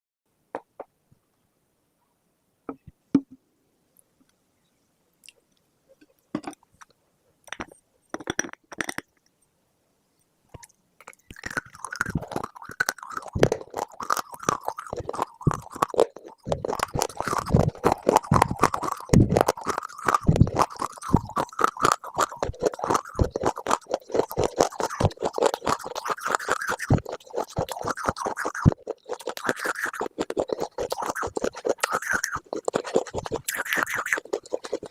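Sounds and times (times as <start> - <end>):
crunching and crackling: 10.6 - 34.9.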